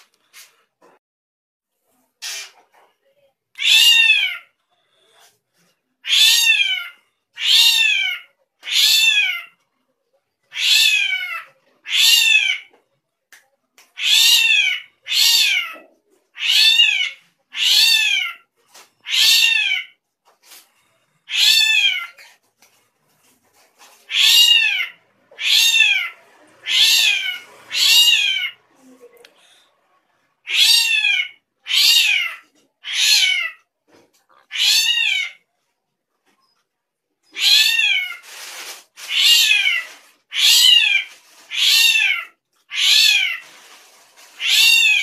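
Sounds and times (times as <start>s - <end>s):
bird giving meow-like calls: 30.5s - 33.6s, 37.4s - 38.2s, 39.1s - 43.4s, 44.4s - 45.0s.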